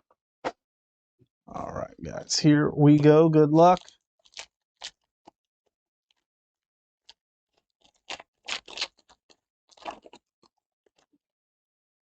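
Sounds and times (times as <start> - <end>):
wrapper tearing and crinkling: 3.8 - 5.0, 7.8 - 10.2.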